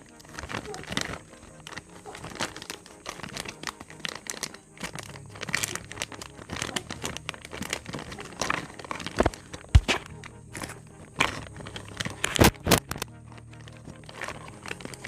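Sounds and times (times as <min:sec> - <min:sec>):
packaging crinkling: 0:00.0 - 0:15.0.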